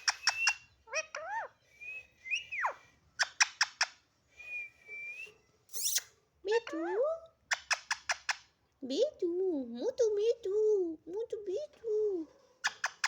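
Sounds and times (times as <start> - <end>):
parrot whistling and calling: 0.0 - 1.7, 2.3 - 3.9, 4.8 - 6.1.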